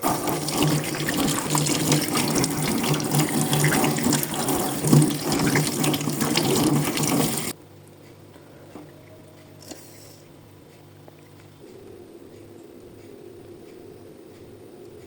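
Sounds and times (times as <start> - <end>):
water rushing in washing machine: 0.0 - 7.6.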